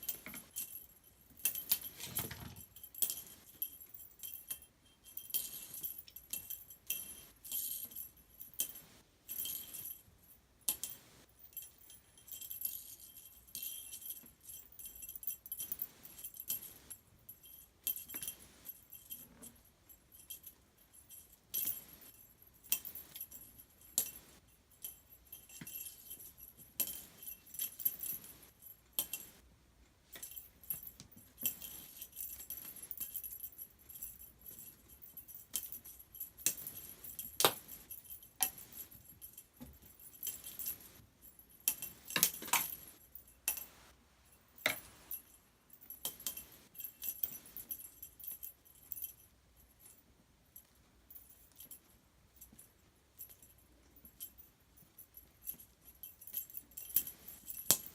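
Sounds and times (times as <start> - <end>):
cat toy jingling: 0.0 - 29.4, 30.0 - 57.9.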